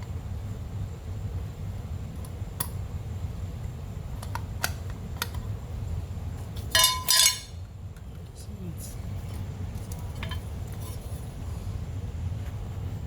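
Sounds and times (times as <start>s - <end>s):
metallic clinking: 6.7s - 7.6s.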